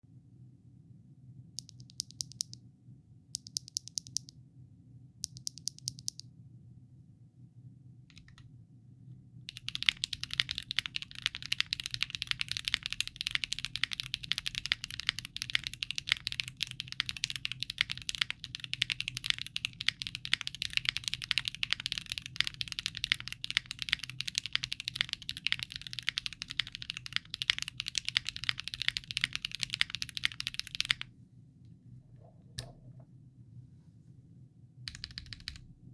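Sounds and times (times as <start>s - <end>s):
faint low hum: 0.0s - 35.9s
mechanical keyboard typing: 1.6s - 2.6s, 3.4s - 4.3s, 5.2s - 6.2s, 8.1s - 8.4s, 9.5s - 31.1s, 34.9s - 35.7s.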